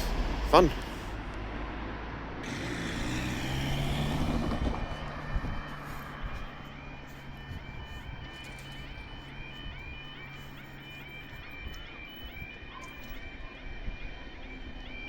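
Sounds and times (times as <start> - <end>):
vehicle engine running: 0.0 - 15.0
warbling crossing alarm: 0.0 - 15.0.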